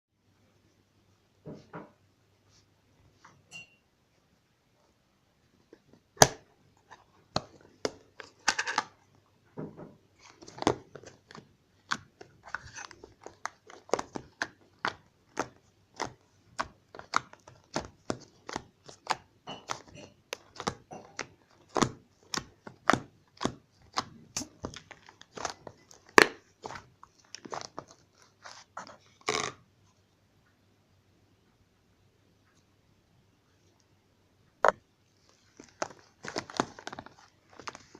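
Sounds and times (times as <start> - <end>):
slime squelching: 10.1 - 29.6, 34.6 - 37.9.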